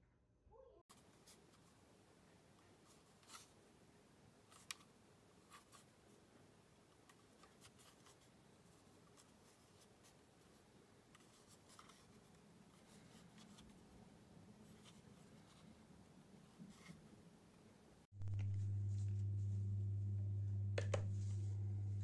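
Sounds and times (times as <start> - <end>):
faint room hiss: 0.9 - 18.1.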